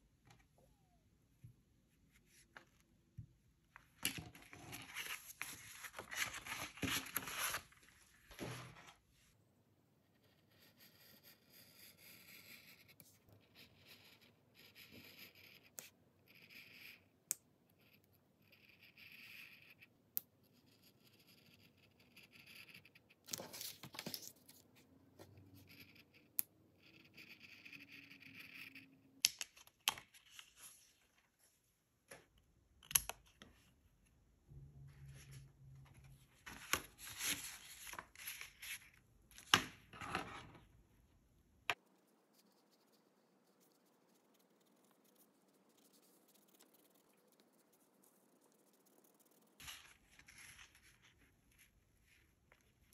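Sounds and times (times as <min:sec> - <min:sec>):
scratchy strokes on paper: 0:41.8 - 0:52.6.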